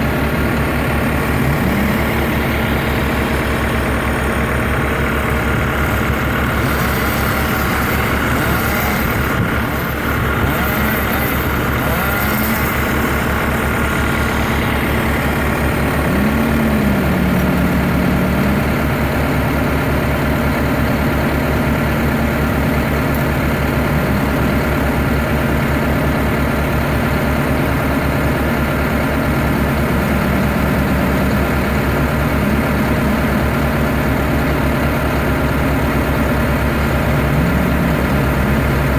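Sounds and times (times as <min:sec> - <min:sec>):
tractor engine running: 0:00.0 - 0:38.9
wavering whines: 0:15.2 - 0:19.2, 0:29.5 - 0:34.1, 0:36.8 - 0:38.9.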